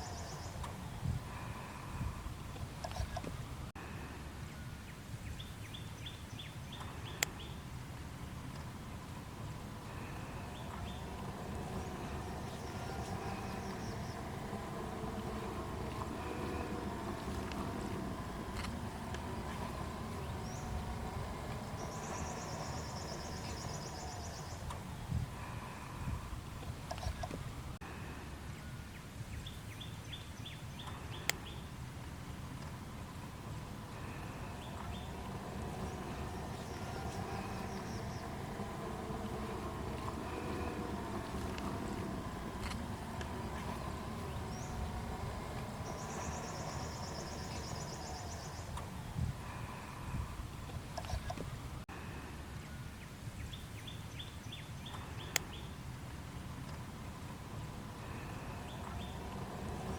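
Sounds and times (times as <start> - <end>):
bird chirping: 0.0 - 0.7, 9.8 - 25.1, 33.4 - 50.0, 58.0 - 59.9
steady low rumble: 7.2 - 28.1, 31.2 - 52.2.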